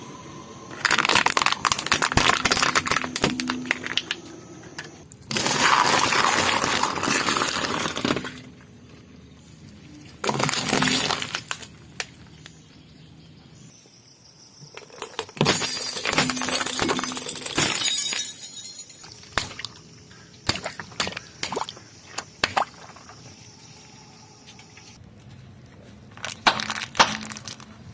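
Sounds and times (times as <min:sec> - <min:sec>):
tyres crushing crunchy objects: 0:00.8 - 0:08.5
sharp cracks and snaps: 0:26.2 - 0:27.8.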